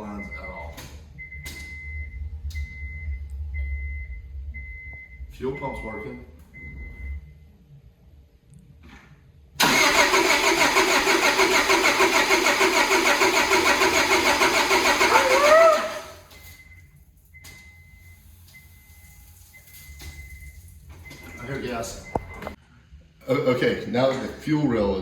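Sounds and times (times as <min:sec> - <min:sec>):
car engine cranking on starter: 0:09.6 - 0:16.3.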